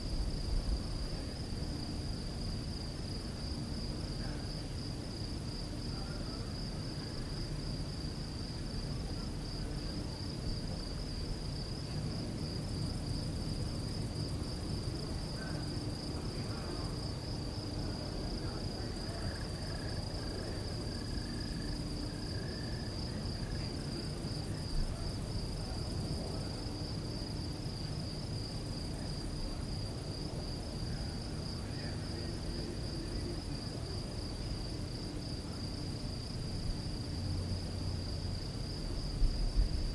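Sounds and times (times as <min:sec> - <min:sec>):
crickets chirping: 0:00.0 - 0:39.9
low background rumble: 0:35.0 - 0:39.9.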